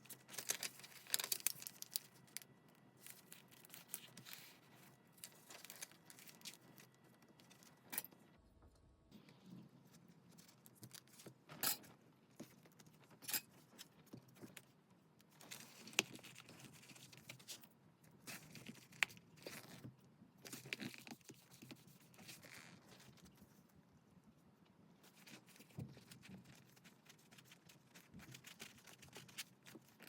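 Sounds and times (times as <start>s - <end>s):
paper rustling and crinkling: 0.0s - 7.9s, 15.3s - 23.6s, 25.0s - 30.0s.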